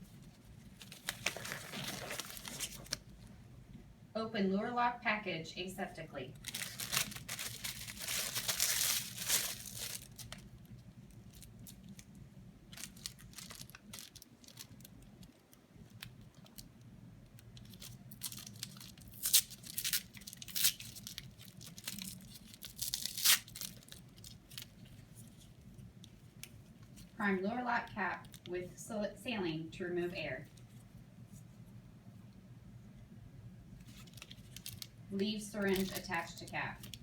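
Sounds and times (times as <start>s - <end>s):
packaging rustles: 0.0s - 3.2s, 6.4s - 27.2s, 33.8s - 37.0s
packaging crinkling and tearing: 0.2s - 3.1s, 6.4s - 27.2s, 33.8s - 35.0s, 35.6s - 37.0s.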